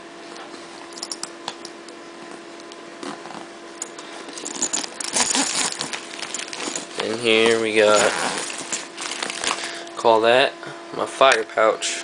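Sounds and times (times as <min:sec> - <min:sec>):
bag zipper opening: 0:03.0 - 0:03.5, 0:04.3 - 0:09.6
gear rattling in a bag: 0:04.2 - 0:09.7.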